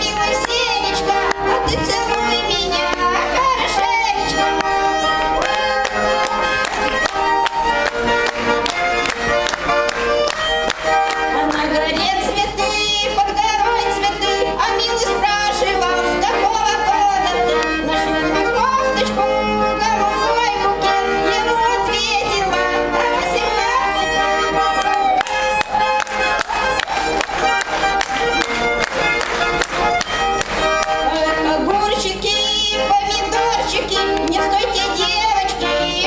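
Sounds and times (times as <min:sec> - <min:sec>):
woman singing: 0:00.0 - 0:05.7, 0:11.0 - 0:25.2, 0:30.9 - 0:36.0
button accordion playing lively tune: 0:00.0 - 0:36.0.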